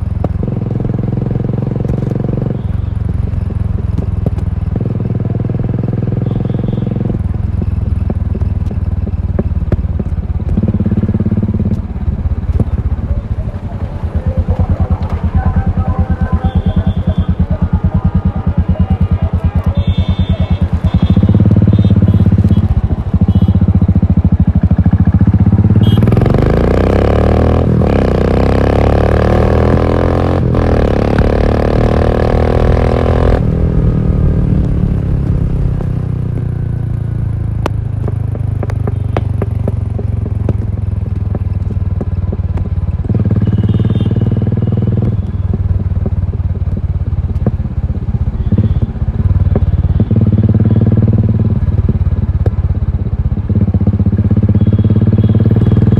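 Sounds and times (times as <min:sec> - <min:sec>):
motorcycle engine thumping: 0:03.0 - 0:06.0, 0:07.0 - 0:26.2, 0:32.6 - 0:54.9
exhaust crackles: 0:07.0 - 0:26.8.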